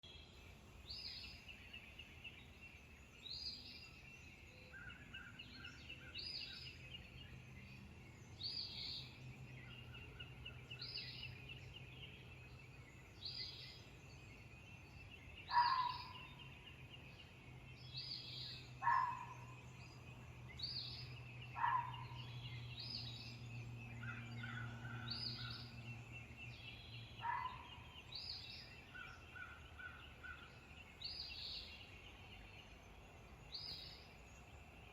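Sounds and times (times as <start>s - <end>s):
songbirds singing: 0.0s - 34.9s
fox barking: 15.5s - 16.3s, 18.8s - 19.5s, 21.6s - 22.2s, 27.2s - 27.8s.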